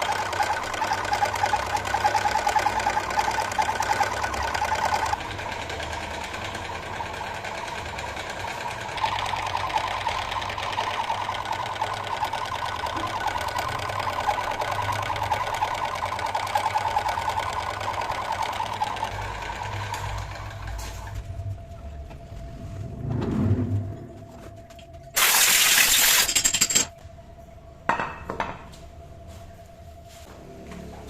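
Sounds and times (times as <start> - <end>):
metal lathe cutting steel: 25.2 - 26.9.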